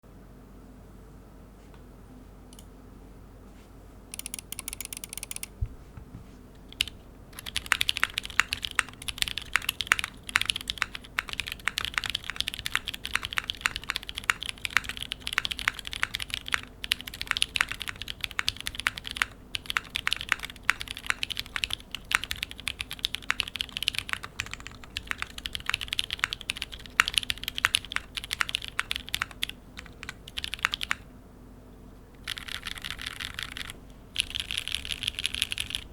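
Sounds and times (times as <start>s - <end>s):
fast rattle of clicks: 4.2s - 5.5s
typing on mechanical keyboard: 4.2s - 5.5s, 6.7s - 31.0s, 32.2s - 35.9s.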